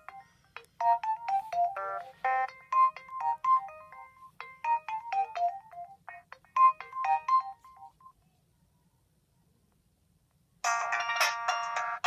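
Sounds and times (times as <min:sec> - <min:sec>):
synthesized ringtone melody: 0:00.0 - 0:08.2, 0:10.6 - 0:12.0.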